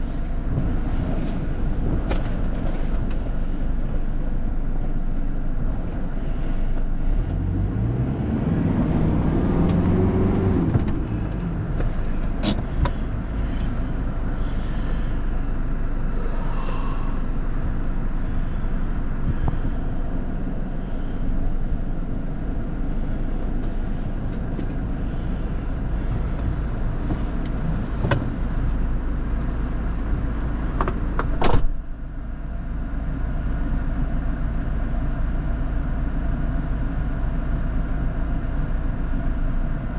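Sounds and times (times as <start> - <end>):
vehicle engine revving: 5.5 - 15.4.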